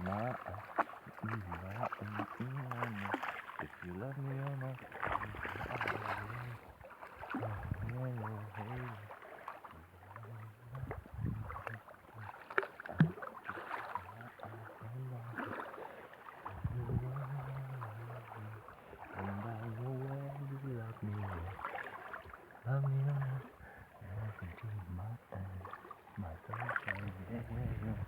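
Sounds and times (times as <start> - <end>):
man singing or humming: 0.0 - 0.6, 1.2 - 3.1, 3.9 - 6.6, 7.4 - 9.0, 9.8 - 12.3, 14.0 - 15.4, 16.5 - 21.6, 22.7 - 28.0
water noise: 0.0 - 28.0.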